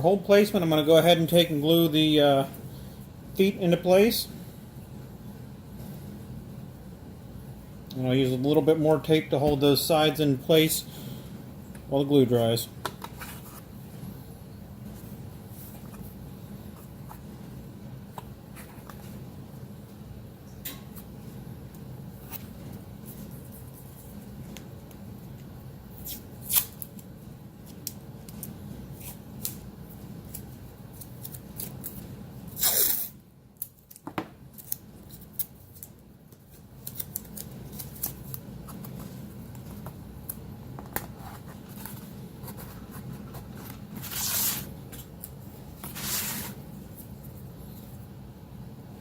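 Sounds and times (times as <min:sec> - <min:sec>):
tape being torn: 0:26.0 - 0:27.0, 0:30.3 - 0:35.9, 0:36.8 - 0:38.4.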